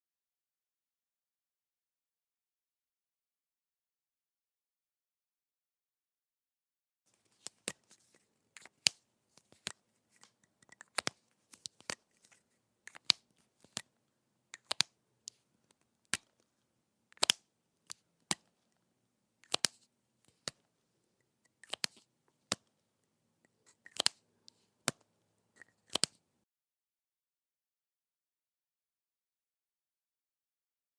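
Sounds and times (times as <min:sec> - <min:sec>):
marker cap clicking: 0:07.4 - 0:13.9, 0:14.5 - 0:16.4, 0:17.1 - 0:18.5, 0:19.4 - 0:20.6, 0:21.5 - 0:22.7, 0:23.6 - 0:26.2.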